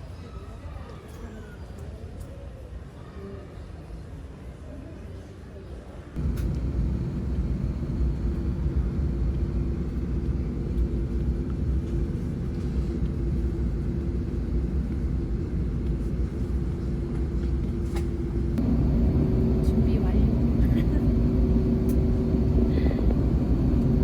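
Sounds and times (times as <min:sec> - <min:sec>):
airliner cabin rumble and drone: 0:06.2 - 0:24.0.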